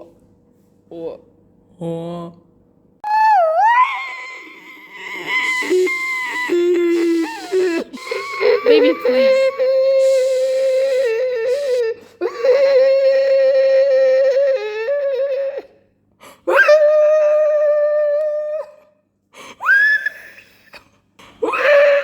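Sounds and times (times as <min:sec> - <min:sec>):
infant crying: 0:03.1 - 0:15.7.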